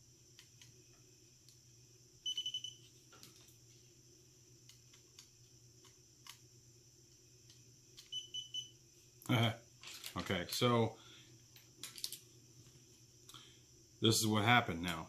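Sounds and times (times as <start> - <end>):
faint clicks of bulbs and wire: 0.3 - 1.7, 7.1 - 8.2
voltage detector beeping: 2.2 - 2.9, 8.0 - 8.8.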